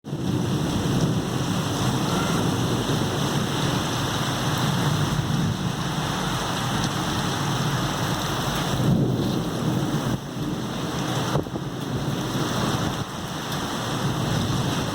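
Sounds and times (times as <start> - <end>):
heavy rain pouring: 0.0 - 14.9.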